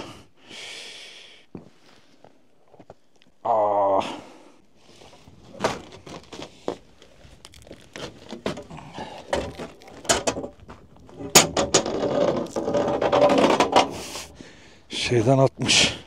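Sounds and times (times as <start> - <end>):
objects being handled clattering: 5.1 - 14.4
person speaking: 8.9 - 10.4, 14.2 - 16.0.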